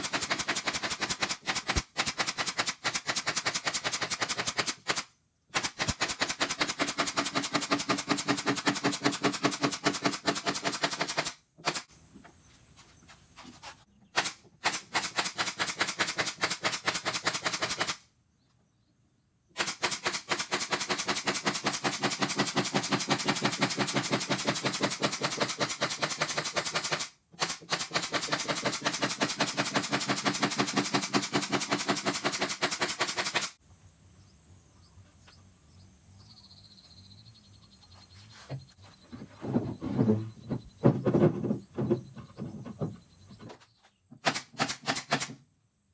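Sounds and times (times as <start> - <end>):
power tool rapid clatter: 0.0 - 11.9, 14.2 - 18.0, 19.6 - 33.6, 44.2 - 45.4.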